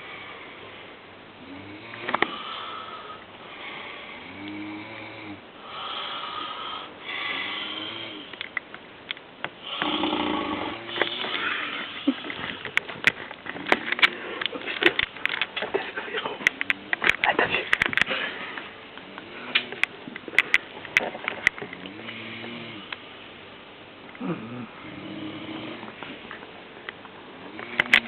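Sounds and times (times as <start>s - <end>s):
old man snoring: 1.4s - 8.3s, 9.6s - 12.0s, 21.8s - 23.0s, 24.2s - 26.0s.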